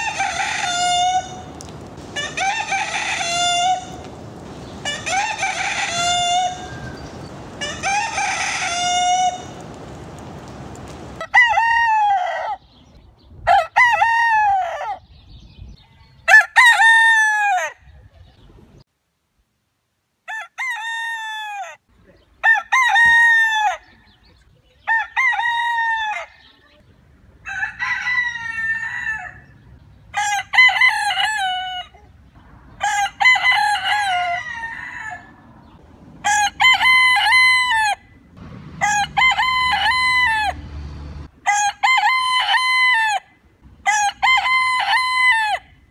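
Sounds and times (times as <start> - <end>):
rooster crowing: 0.0 - 1.6, 2.2 - 4.1, 4.8 - 9.7, 27.4 - 29.6, 32.8 - 35.5, 36.2 - 38.0, 38.8 - 40.6, 41.4 - 45.7.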